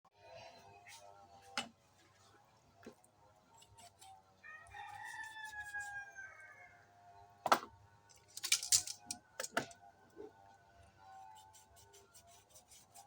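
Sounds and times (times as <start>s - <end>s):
rooster crowing: 4.4s - 7.0s.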